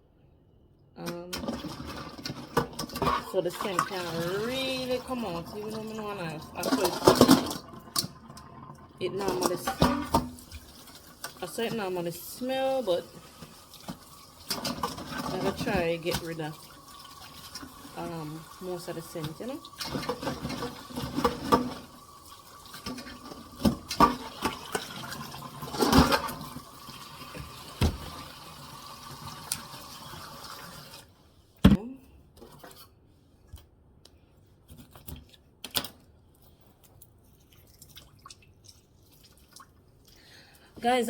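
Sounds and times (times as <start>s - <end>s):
kitchen tap running: 1.3s - 31.1s.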